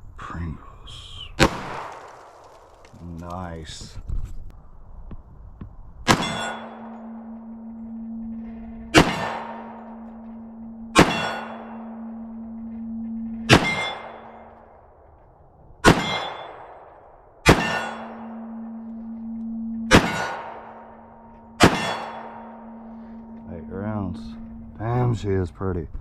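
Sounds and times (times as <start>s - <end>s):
pistol shots with echo: 1.4s - 2.0s, 6.0s - 7.2s, 8.9s - 10.0s, 10.9s - 12.2s, 13.5s - 14.6s, 15.8s - 18.6s, 19.9s - 21.0s, 21.6s - 22.8s.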